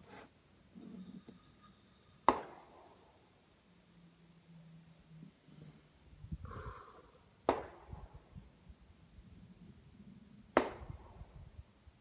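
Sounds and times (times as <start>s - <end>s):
distant gunshots echoing: 7.5s - 8.0s.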